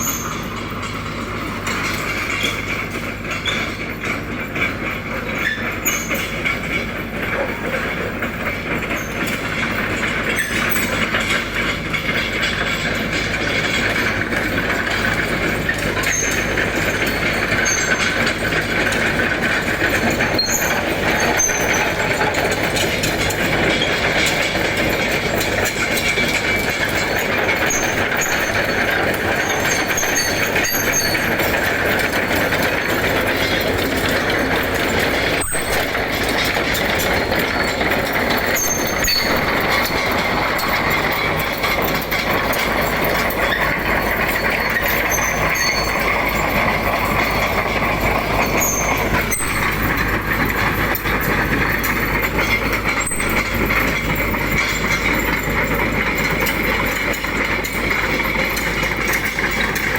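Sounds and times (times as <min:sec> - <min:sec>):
chainsaw running under load: 0:00.0 - 0:59.9.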